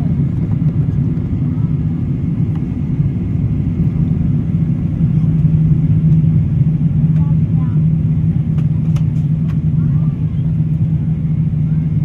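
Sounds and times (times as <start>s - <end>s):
vehicle cabin rumble: 0.0s - 11.9s
constant low hum: 0.0s - 12.0s.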